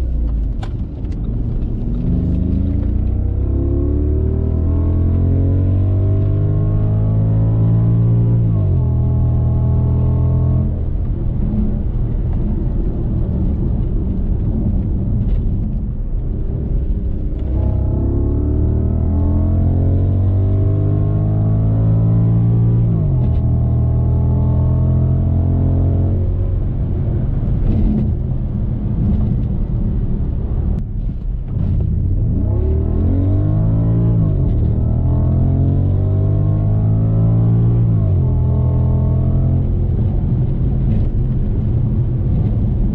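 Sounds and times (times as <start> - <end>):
car engine running: 0.0 - 5.1
car engine revving: 0.0 - 15.5, 16.3 - 42.9.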